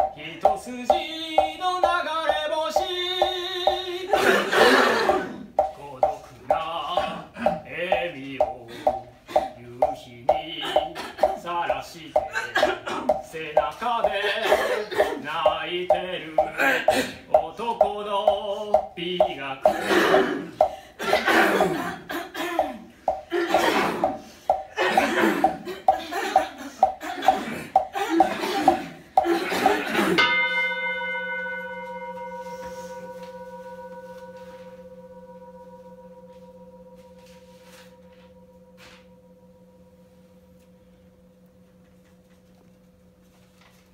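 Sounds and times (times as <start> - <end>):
bowl bell ringing: 0.0 - 11.4, 26.3 - 43.8
people clearing throats rhythmically: 0.0 - 31.0.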